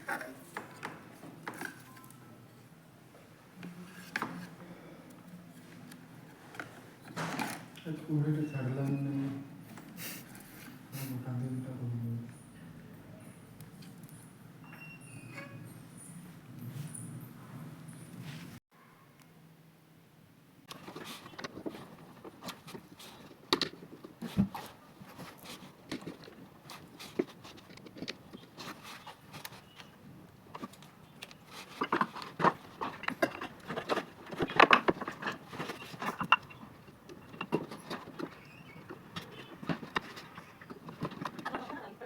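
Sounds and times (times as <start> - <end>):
hard objects clicking and knocking: 20.7 - 41.9.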